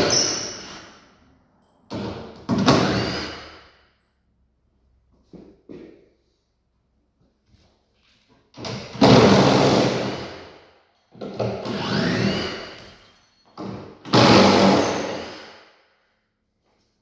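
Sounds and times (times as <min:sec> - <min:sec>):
handheld power tool running: 0:11.4 - 0:12.9, 0:14.1 - 0:15.5.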